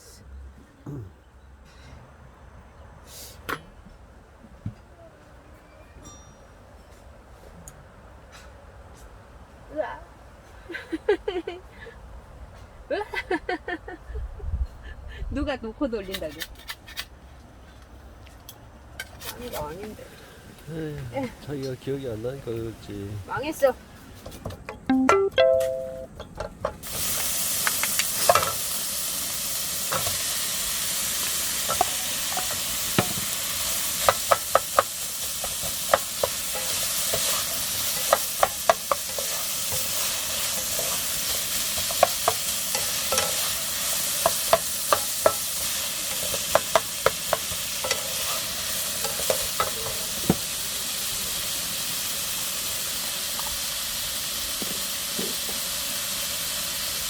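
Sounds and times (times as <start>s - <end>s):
food sizzling in a frying pan: 26.6s - 57.0s.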